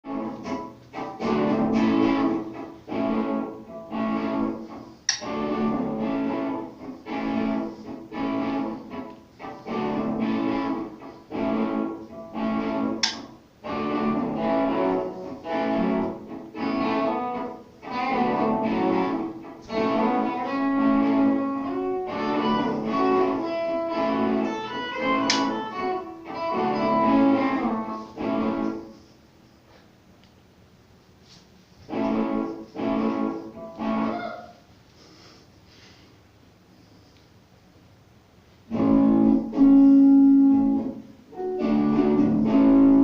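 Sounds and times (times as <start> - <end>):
guitar plucked notes: 0.0 - 28.9, 31.9 - 34.2, 38.7 - 43.0.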